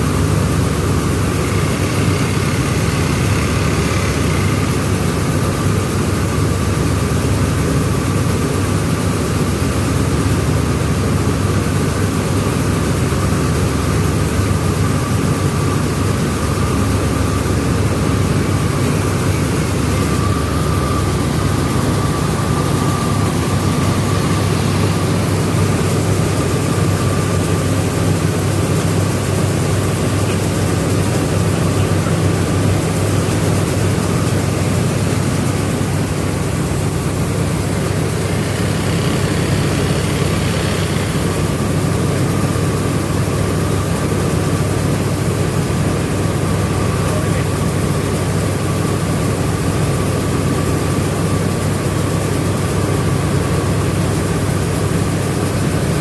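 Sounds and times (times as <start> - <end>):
machinery drone: 0.0 - 56.0
thin high whine: 0.4 - 7.2, 13.6 - 42.8.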